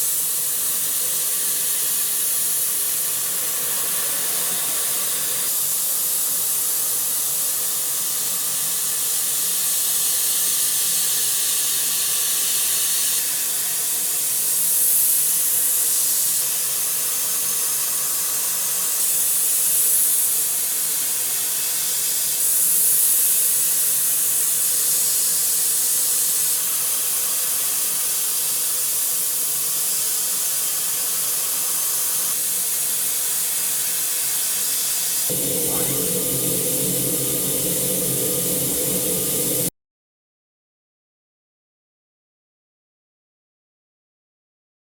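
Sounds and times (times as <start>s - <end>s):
faint machine tones: 35.3s - 39.7s
milling machine high hiss: 35.3s - 39.7s.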